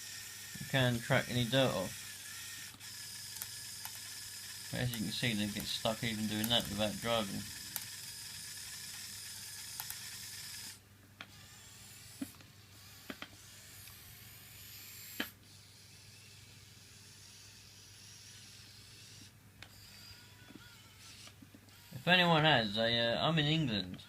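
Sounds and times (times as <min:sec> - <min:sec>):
toy motors whirring: 0:00.0 - 0:22.4
sharp plastic clicks: 0:06.4 - 0:06.8.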